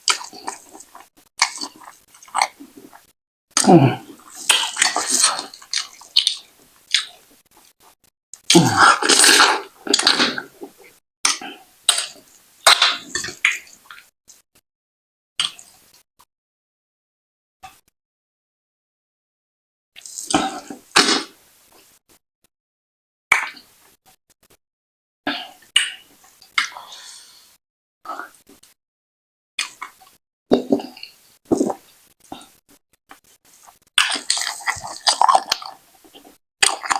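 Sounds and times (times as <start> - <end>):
wet mouth chewing noises: 0.0 - 12.2, 29.6 - 31.9, 33.2 - 36.9.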